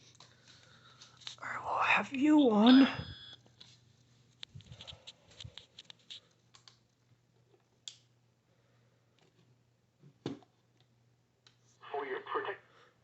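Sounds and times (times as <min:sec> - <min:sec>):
faint low hum: 0:00.0 - 0:13.0
faint clicks and taps: 0:03.4 - 0:08.1.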